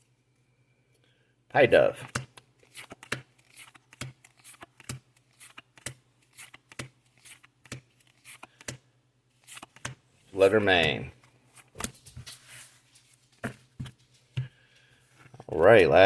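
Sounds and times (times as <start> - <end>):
cards flipping with papery clicks: 2.0 - 10.0, 10.8 - 15.0.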